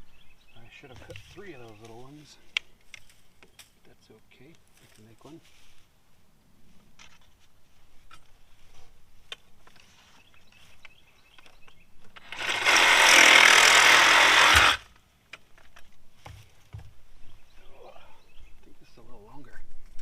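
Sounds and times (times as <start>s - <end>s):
power tool cutting plastic pipe: 12.2s - 14.9s.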